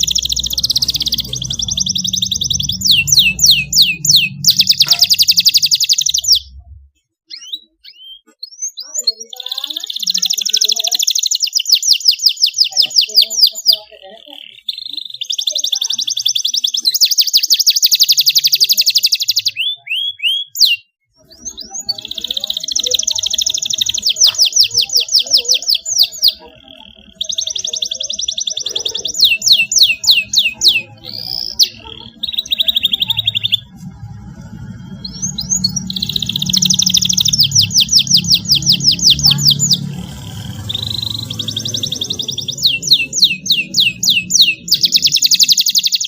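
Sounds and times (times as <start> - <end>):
canary singing trills: 0.0 - 46.0
faint low hum: 21.3 - 45.6.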